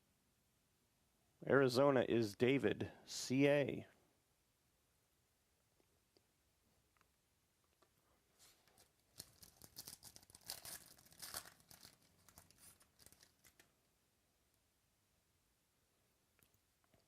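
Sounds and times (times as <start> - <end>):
wrapper crinkling and tearing: 8.6 - 13.7.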